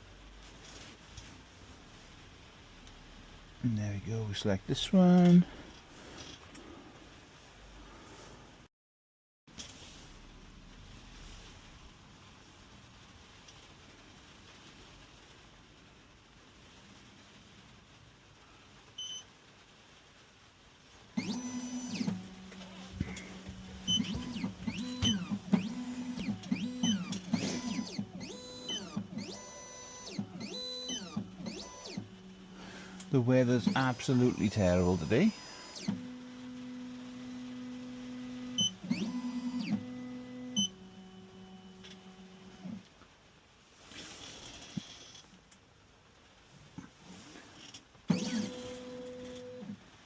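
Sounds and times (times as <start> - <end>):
stepper motors whining: 21.2 - 42.7
machine beeps: 23.9 - 32.1, 33.6 - 36.6, 38.5 - 39.7, 40.6 - 40.8.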